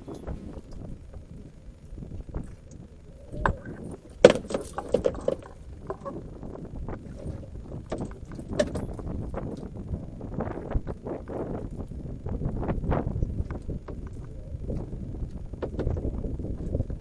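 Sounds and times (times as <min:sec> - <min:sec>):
low rumbling noise: 0:00.0 - 0:17.0
knocks and clatters on a boat: 0:03.4 - 0:09.8, 0:13.0 - 0:17.0.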